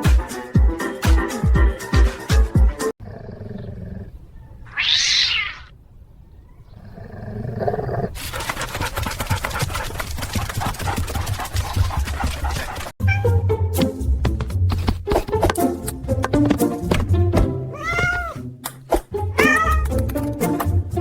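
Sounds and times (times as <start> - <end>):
cat growling and yowling: 3.3 - 5.7, 17.7 - 18.4, 19.4 - 19.8
cat hissing: 4.7 - 5.7.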